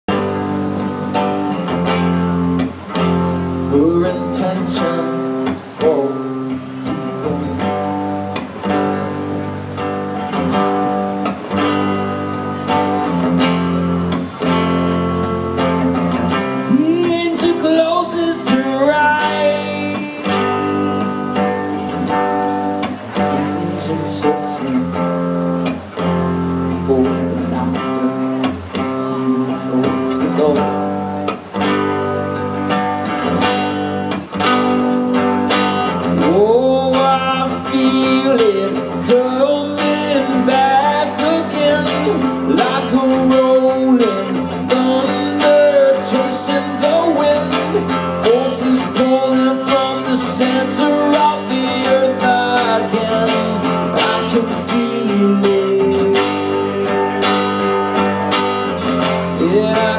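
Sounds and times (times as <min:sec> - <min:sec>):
guitar strumming chords: 0:00.1 - 0:59.9
person singing: 0:02.8 - 0:14.6, 0:15.6 - 0:31.6, 0:35.1 - 0:59.9.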